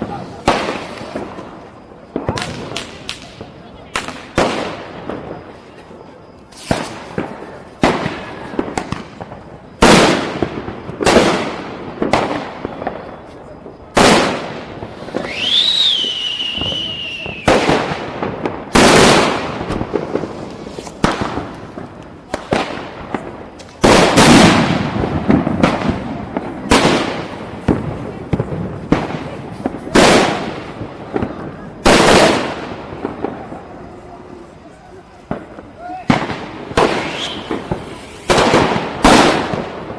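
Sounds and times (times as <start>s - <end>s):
firecrackers bursting: 0.0s - 39.9s
firework whistle: 12.4s - 17.9s, 33.3s - 39.6s.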